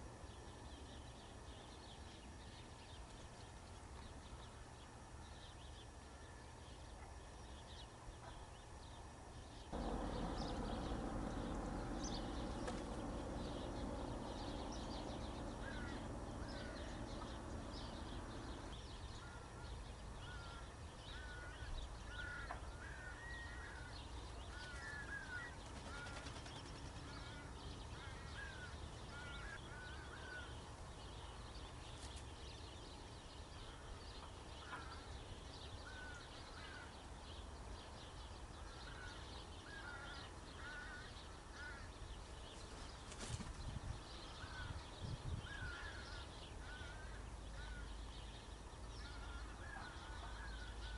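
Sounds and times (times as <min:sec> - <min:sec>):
birds calling: 0:00.0 - 0:50.9
small birds chirping: 0:00.0 - 0:50.9
steady rumbling noise: 0:09.6 - 0:31.6.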